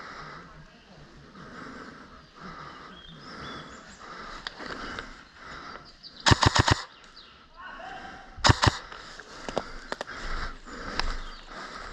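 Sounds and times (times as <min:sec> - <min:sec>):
sharp clicks: 0:06.2 - 0:07.2, 0:08.4 - 0:10.2
airsoft gun firing burst: 0:06.3 - 0:06.9, 0:08.4 - 0:08.9.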